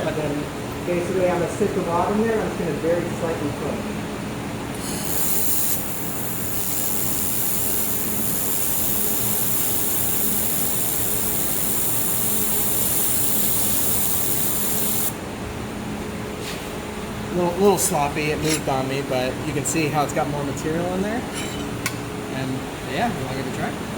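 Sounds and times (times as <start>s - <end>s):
low machine hum: 0.0s - 23.9s
laser welder hissing: 4.7s - 15.2s.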